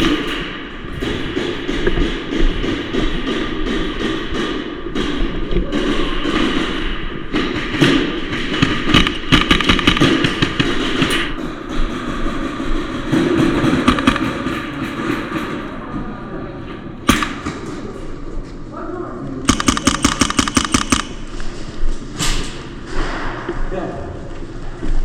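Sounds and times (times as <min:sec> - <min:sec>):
airsoft guns firing: 0:00.0 - 0:15.8, 0:17.0 - 0:18.2, 0:19.4 - 0:21.7
background din: 0:00.0 - 0:16.2, 0:19.4 - 0:21.5.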